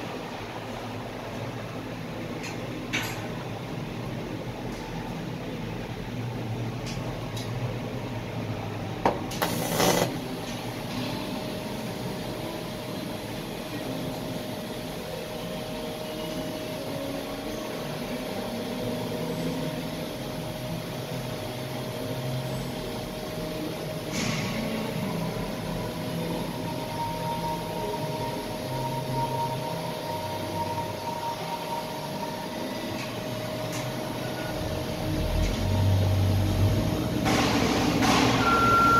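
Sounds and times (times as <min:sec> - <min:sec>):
welding hum and hiss: 0:09.0 - 0:15.1
welding click: 0:09.3 - 0:10.2
short loud welding burst: 0:09.4 - 0:10.2.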